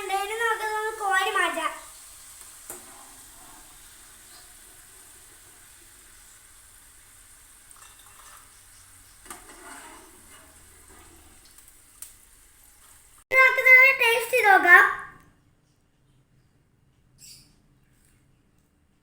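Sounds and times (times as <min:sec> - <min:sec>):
fries sizzling in hot oil: 0:00.0 - 0:14.8.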